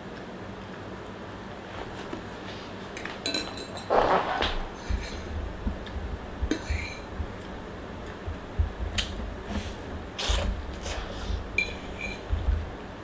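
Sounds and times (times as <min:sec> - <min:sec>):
utensils clinking on a dish: 0:03.2 - 0:03.9, 0:11.6 - 0:12.3
low handling knocks: 0:04.6 - 0:10.1.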